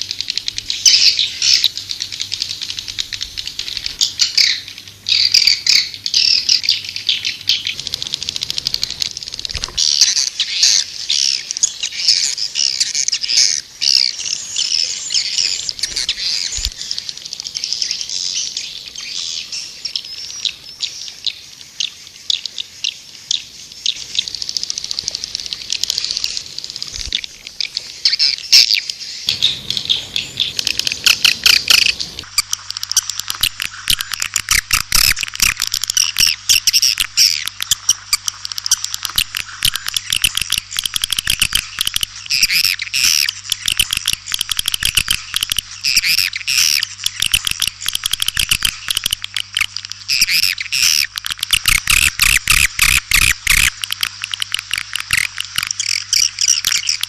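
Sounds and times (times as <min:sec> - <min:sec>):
faint low hum: 0:00.0 - 0:21.7, 0:23.2 - 0:57.0
swiftlets twittering and clicking: 0:07.5 - 0:14.2, 0:24.1 - 0:57.0.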